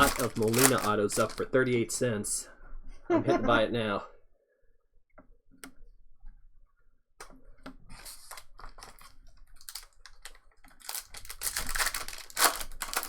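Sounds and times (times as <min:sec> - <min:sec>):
trading cards shuffled: 0:00.0 - 0:01.5, 0:07.9 - 0:13.0
foil wrapper crinkling: 0:00.0 - 0:01.6, 0:07.9 - 0:13.0.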